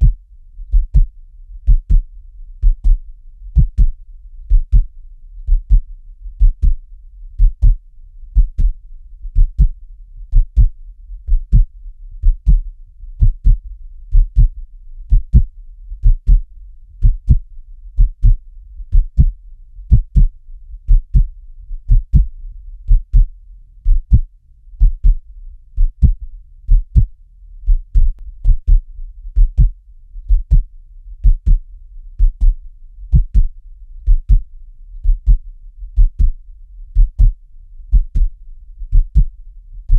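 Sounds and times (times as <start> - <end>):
heartbeat double thump: 0.0 - 3.0, 3.6 - 4.9, 5.5 - 6.8, 7.4 - 7.8, 8.4 - 12.6, 13.2 - 20.3, 20.9 - 21.3, 21.9 - 22.3, 22.9 - 25.2, 25.8 - 31.6, 32.2 - 33.5, 34.1 - 35.4, 36.0 - 36.4, 37.0 - 38.3, 38.9 - 39.3
faint low hum: 0.0 - 39.9.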